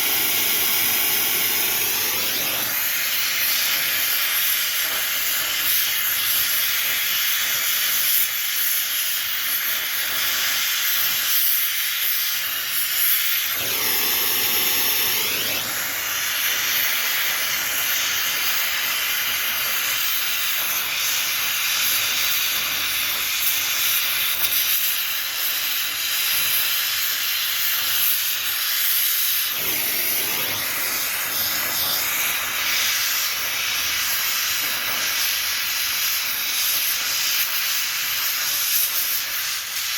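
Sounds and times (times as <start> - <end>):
gas torch hissing: 0.0 - 39.9.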